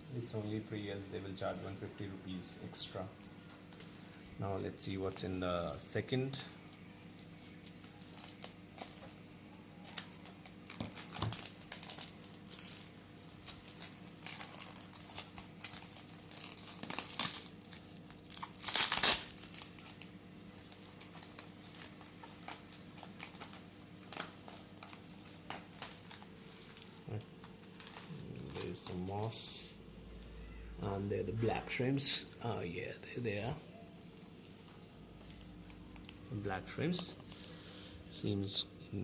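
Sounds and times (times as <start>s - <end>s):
packaging crinkling: 6.8s - 29.4s, 34.0s - 37.8s
packaging tearing: 7.5s - 29.1s.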